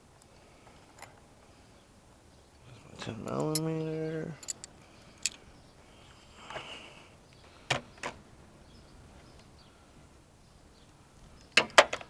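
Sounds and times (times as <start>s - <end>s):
socket clicking onto ratchet: 4.4s - 5.4s.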